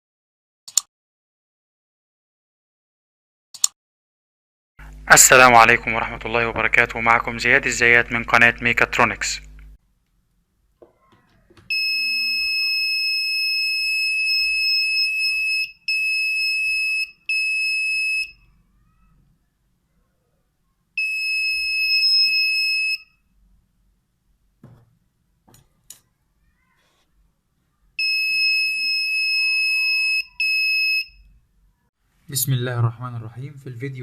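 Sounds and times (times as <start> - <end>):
high piercing alarm buzzer: 11.7 - 18.6, 21.0 - 23.2, 28.0 - 31.3.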